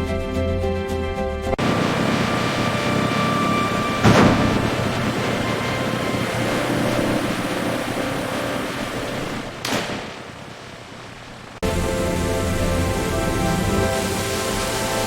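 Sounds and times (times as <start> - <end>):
sharp hit: 1.6 - 8.3
whooshing machinery: 1.6 - 9.7, 11.0 - 15.0.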